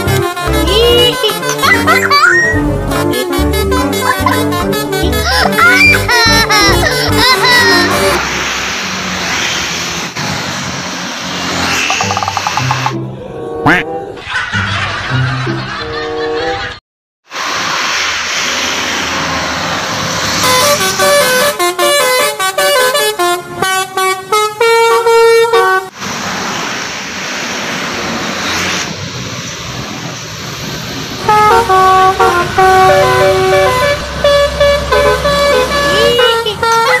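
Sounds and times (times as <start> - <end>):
multi-tone air horn melody: 0.0 - 1.7, 2.6 - 8.2, 20.4 - 26.0, 31.2 - 37.0.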